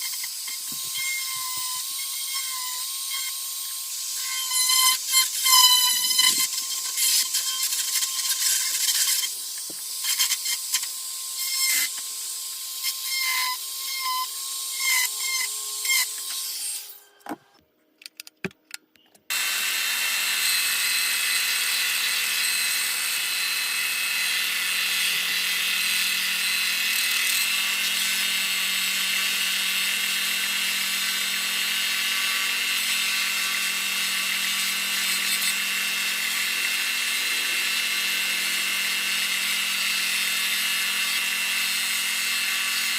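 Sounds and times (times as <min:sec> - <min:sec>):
rotary tool scraping wood: 0:00.0 - 0:12.1, 0:24.1 - 0:42.9
rotary tool whining grinding wood: 0:00.0 - 0:17.6, 0:19.3 - 0:42.9.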